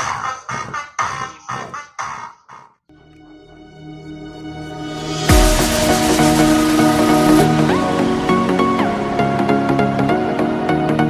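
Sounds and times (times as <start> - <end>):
music with sharp struck notes: 4.2 - 10.3.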